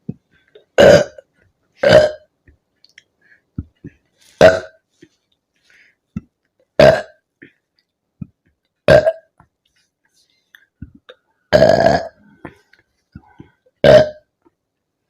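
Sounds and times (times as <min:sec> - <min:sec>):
woman burping loudly: 0:00.6 - 0:01.2, 0:01.8 - 0:02.3, 0:04.4 - 0:04.8, 0:06.8 - 0:07.2, 0:08.8 - 0:09.3, 0:11.5 - 0:12.5, 0:13.8 - 0:14.3.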